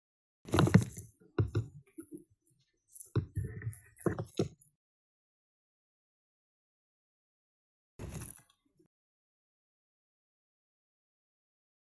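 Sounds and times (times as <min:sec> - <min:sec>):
tarantula stridulating: 0:00.5 - 0:04.7.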